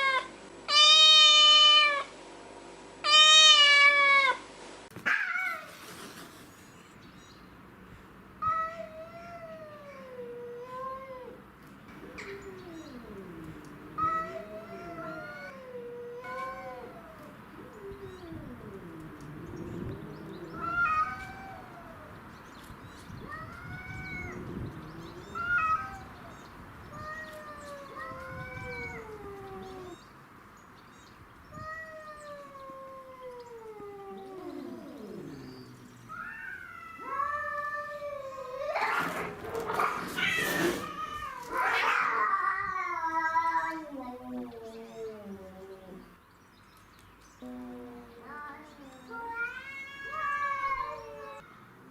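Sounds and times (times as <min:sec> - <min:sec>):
cat yowling: 0:05.0 - 0:05.8, 0:12.0 - 0:22.2, 0:23.2 - 0:30.0, 0:31.5 - 0:46.1, 0:47.4 - 0:51.5.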